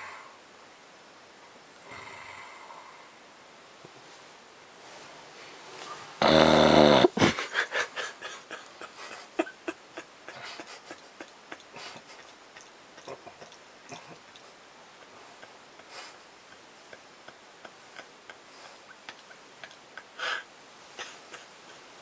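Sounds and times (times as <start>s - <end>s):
snore-snort: 1.8s - 3.1s, 6.2s - 7.2s.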